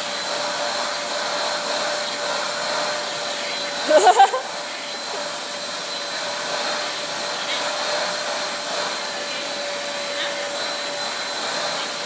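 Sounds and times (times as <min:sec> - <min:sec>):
vacuum cleaner running: 0:00.0 - 0:12.0.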